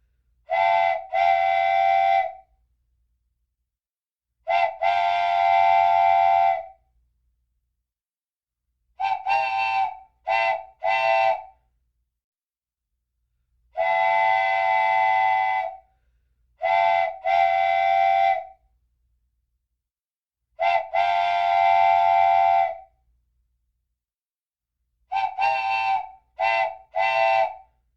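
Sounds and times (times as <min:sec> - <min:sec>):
wooden train whistle blowing: 0:00.5 - 0:02.5, 0:04.5 - 0:06.8, 0:09.0 - 0:11.6, 0:13.8 - 0:15.9, 0:16.6 - 0:18.6, 0:20.6 - 0:23.0, 0:25.1 - 0:27.8.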